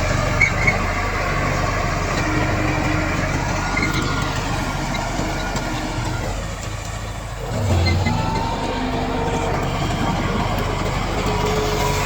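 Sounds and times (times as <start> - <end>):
bulldozer diesel engine running: 0.0 - 12.0
metallic track clatter: 0.0 - 12.0.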